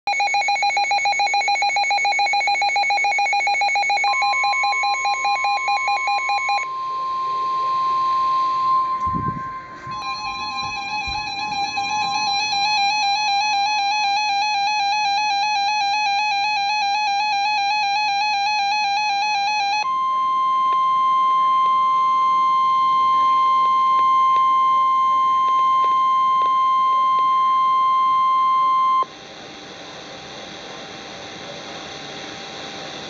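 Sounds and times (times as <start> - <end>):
steady high alarm tone: 0.1 - 29.1
warbling two-tone alert signal: 0.4 - 16.5.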